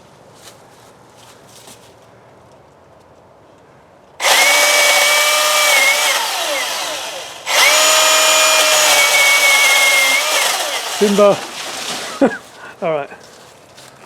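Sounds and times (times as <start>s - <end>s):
battery chainsaw whining: 4.2s - 12.4s.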